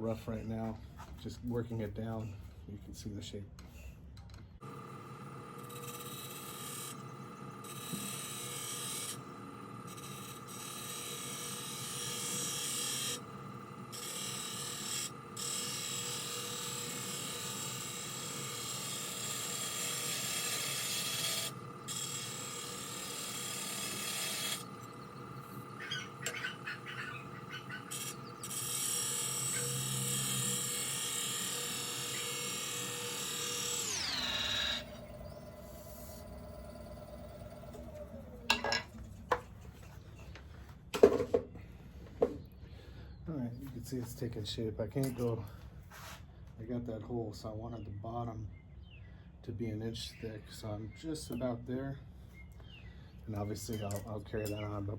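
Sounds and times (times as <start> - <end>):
lathe motor whine: 4.6 - 39.4.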